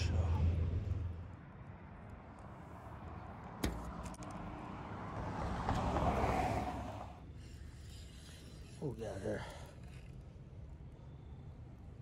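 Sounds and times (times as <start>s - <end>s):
vehicle passing: 0.0s - 7.6s.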